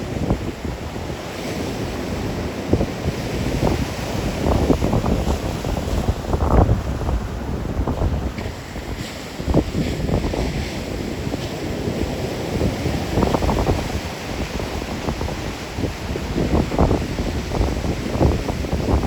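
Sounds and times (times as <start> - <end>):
surf breaking on rocks: 0.0 - 19.0
wind buffeting microphone: 0.0 - 19.0.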